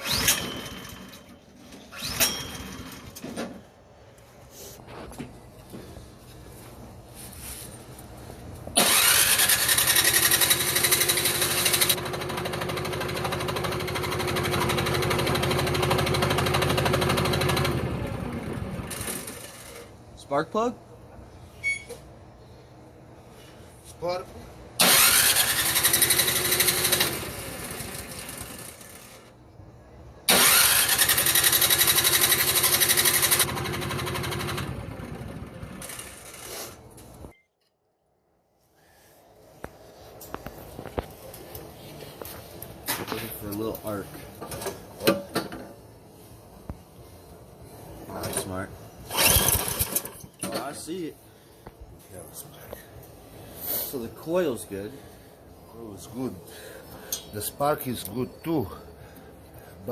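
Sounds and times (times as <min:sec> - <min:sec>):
electric starter cranking engine: 0:00.0 - 0:01.3, 0:08.8 - 0:19.9, 0:24.8 - 0:29.3, 0:30.3 - 0:36.6, 0:49.1 - 0:50.4.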